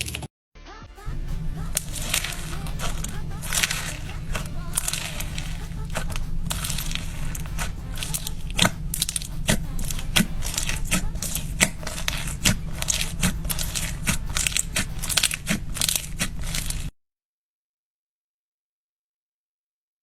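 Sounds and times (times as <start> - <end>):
steady low hum: 1.1 - 16.9
continuous crackle: 1.6 - 16.9.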